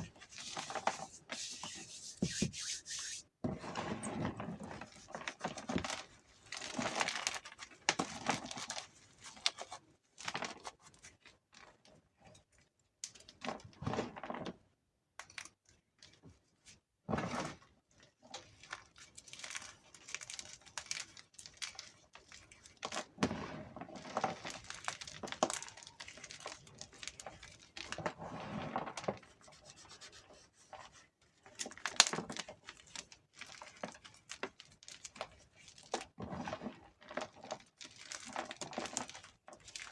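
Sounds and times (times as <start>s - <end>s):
chalk crunching between fingers: 0.4s - 3.2s.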